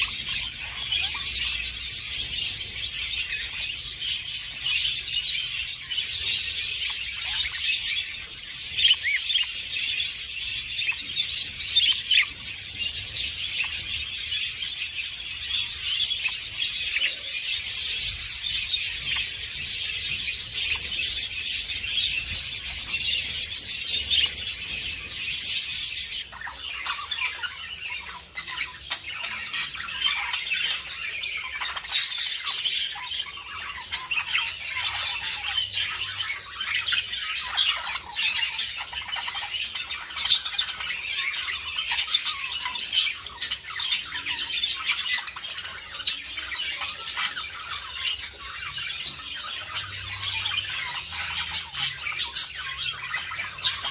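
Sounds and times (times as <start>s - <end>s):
budgerigars chirping and warbling: 0.0s - 53.9s.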